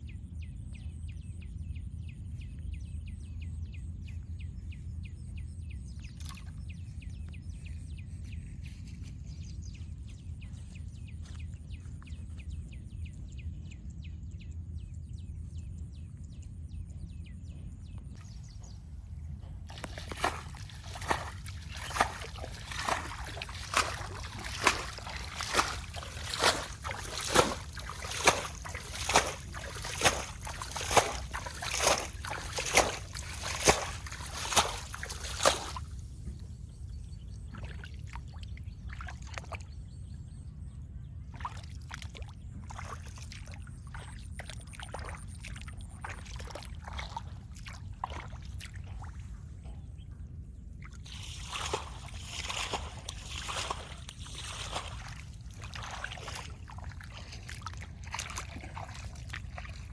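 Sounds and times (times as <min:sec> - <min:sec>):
water splashing rhythmically: 0:18.2 - 0:39.9, 0:41.3 - 0:49.8, 0:50.6 - 0:59.9.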